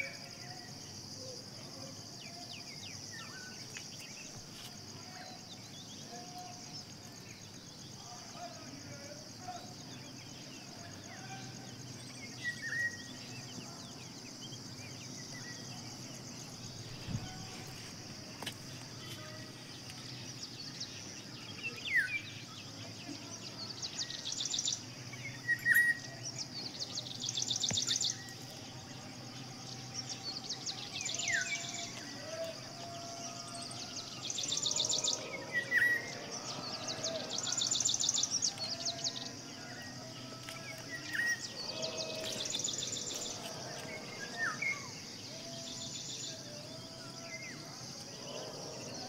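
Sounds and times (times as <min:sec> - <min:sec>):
birds chirping: 0:00.0 - 0:49.0
bird pulsed trill: 0:09.6 - 0:18.3, 0:18.9 - 0:46.5.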